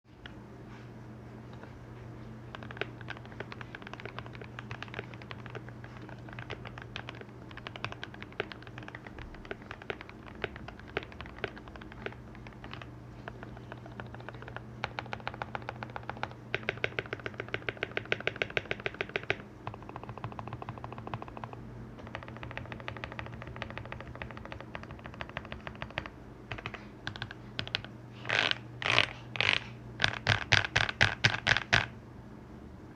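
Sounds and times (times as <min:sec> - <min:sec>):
low steady hum: 0:00.1 - 0:32.9
mechanical keyboard keystrokes: 0:02.5 - 0:27.9.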